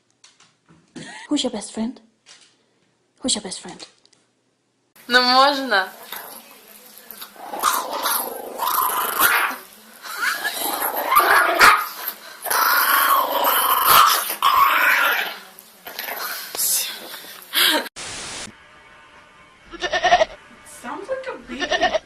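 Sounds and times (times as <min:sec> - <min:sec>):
dog growling: 0:06.0 - 0:06.5, 0:07.2 - 0:17.4.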